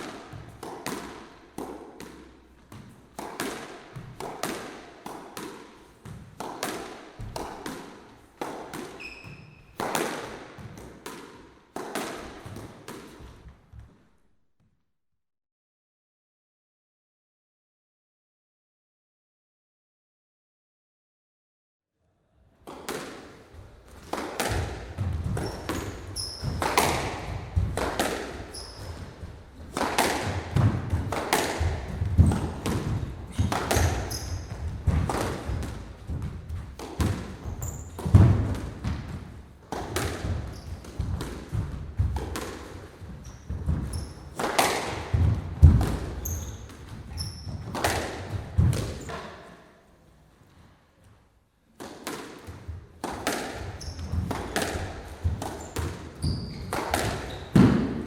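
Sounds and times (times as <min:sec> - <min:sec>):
squash ball hits echoing: 0:00.0 - 0:13.5, 0:22.6 - 0:49.9, 0:51.7 - 0:58.0
short high shoe squeaks: 0:09.0 - 0:09.8, 0:25.4 - 0:26.6, 0:28.5 - 0:29.0, 0:33.3 - 0:34.5, 0:37.4 - 0:38.0, 0:46.2 - 0:47.6, 0:53.8 - 0:54.1, 0:55.6 - 0:57.6.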